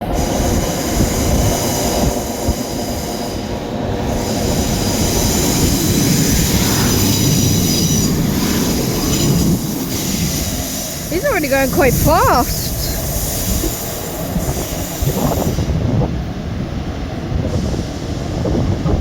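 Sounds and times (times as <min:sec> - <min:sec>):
train rumbling past: 0:00.0 - 0:19.0.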